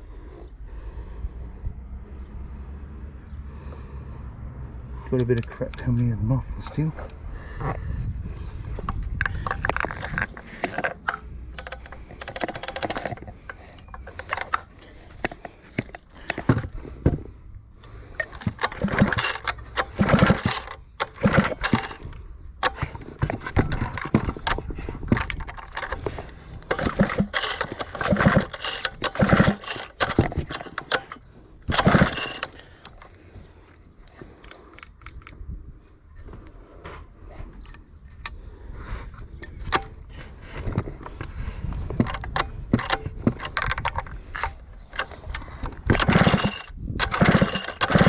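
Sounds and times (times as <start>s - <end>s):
metallic clicks and clatter: 8.8s - 33.2s, 39.4s - 48.0s.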